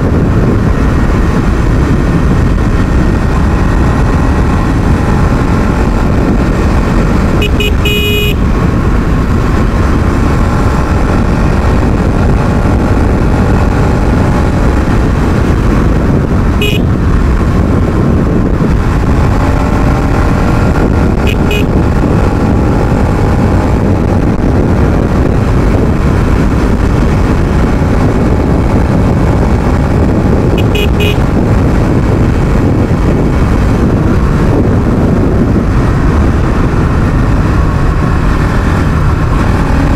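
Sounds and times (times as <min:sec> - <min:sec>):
motorcycle engine running: 0:00.0 - 0:39.9
horn beeps: 0:07.4 - 0:08.5, 0:16.6 - 0:16.9, 0:21.2 - 0:21.8, 0:30.5 - 0:31.2.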